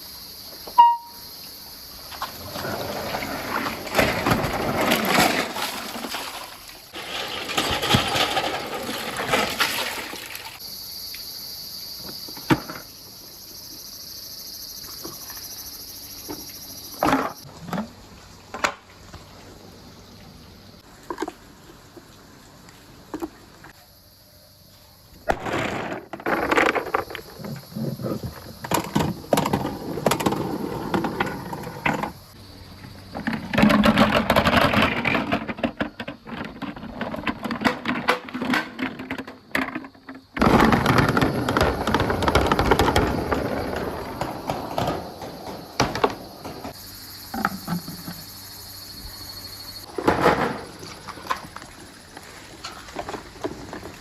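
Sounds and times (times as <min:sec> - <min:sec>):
marbles rolling and clattering: 0:02.5 - 0:10.6, 0:25.4 - 0:27.6, 0:28.3 - 0:32.2, 0:33.2 - 0:46.8.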